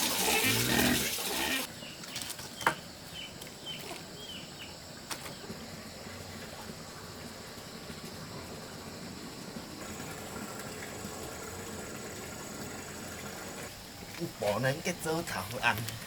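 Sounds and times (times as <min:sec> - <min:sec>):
bird chirping: 0:01.7 - 0:05.4.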